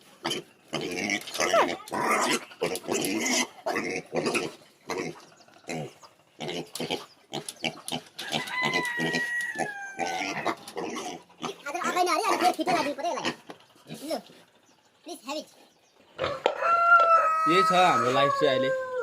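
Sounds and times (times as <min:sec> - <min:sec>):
pigs grunting and eating: 0:00.0 - 0:16.6
pig high-pitched cry: 0:00.2 - 0:07.8, 0:08.4 - 0:14.0, 0:17.2 - 0:19.0.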